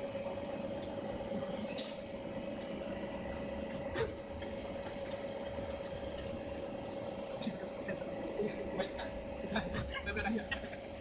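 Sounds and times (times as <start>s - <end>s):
background hum: 0.0s - 11.0s
lathe whine: 0.0s - 11.0s.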